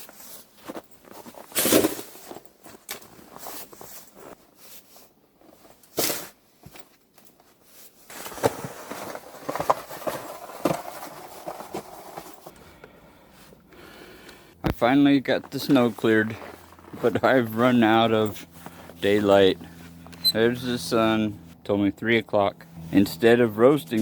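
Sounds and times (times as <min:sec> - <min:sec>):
snow shovel scraping and crunching: 0:00.0 - 0:06.4, 0:07.6 - 0:12.5, 0:14.0 - 0:21.1.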